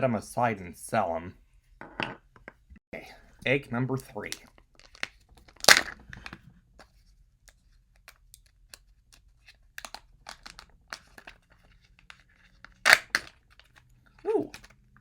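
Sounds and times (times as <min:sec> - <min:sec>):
sharp plastic rips: 0:04.9 - 0:06.3, 0:12.7 - 0:14.7.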